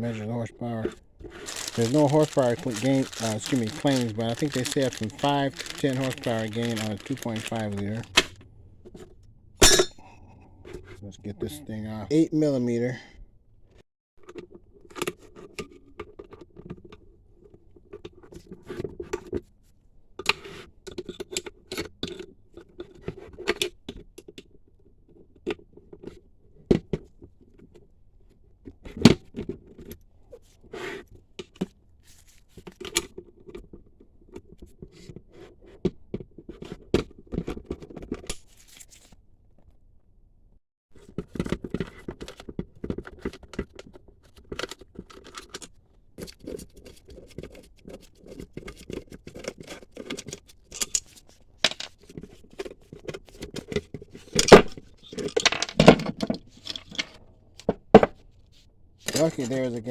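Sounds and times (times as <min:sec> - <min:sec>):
hand tools clinking on metal: 0:01.5 - 0:08.4.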